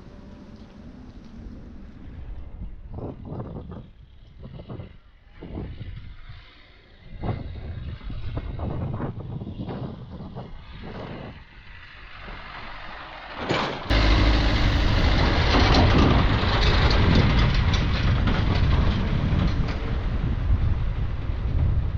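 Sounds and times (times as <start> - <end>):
engine running: 0.0 - 3.8, 10.8 - 21.9
engine crackling and rattling: 0.0 - 21.9.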